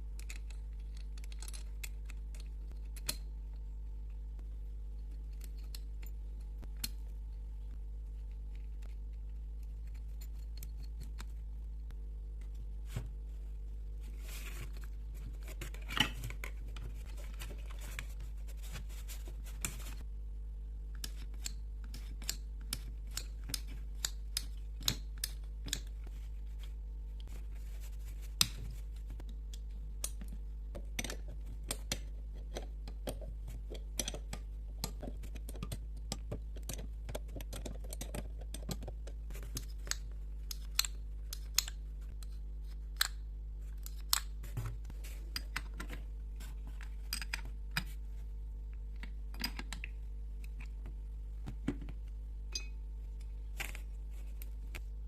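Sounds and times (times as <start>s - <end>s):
tools clicking and tapping: 0.1s - 3.7s, 5.0s - 7.1s, 8.2s - 11.4s, 21.0s - 26.1s, 28.4s - 42.3s, 46.7s - 48.0s, 49.0s - 53.9s.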